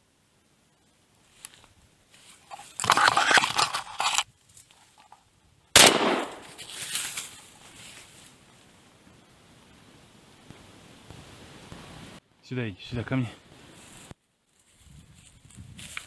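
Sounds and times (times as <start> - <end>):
rustling and handling noise: 1.2 - 5.2, 6.2 - 8.7, 13.7 - 16.0
shotgun shot: 5.8 - 6.7.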